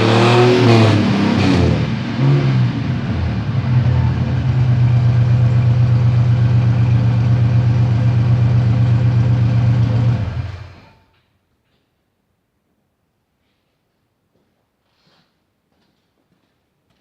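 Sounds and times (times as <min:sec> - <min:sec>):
car engine idling: 0:00.0 - 0:10.9.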